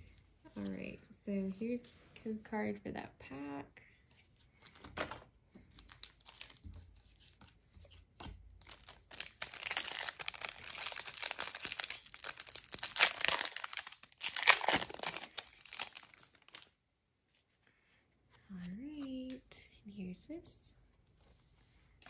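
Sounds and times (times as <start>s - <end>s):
wrapper crinkling and tearing: 4.7s - 7.4s, 8.6s - 16.7s.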